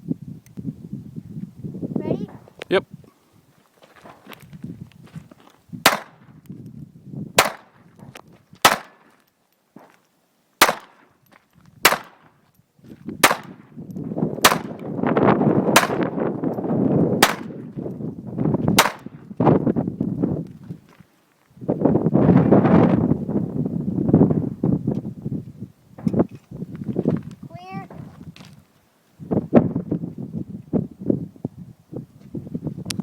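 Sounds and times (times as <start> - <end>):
pistol shots: 5.9 - 6.2, 7.4 - 7.7, 8.6 - 9.0, 10.6 - 11.0, 11.8 - 12.2, 13.2 - 13.6, 14.4 - 14.8, 15.7 - 16.1, 17.2 - 17.6, 18.8 - 19.1.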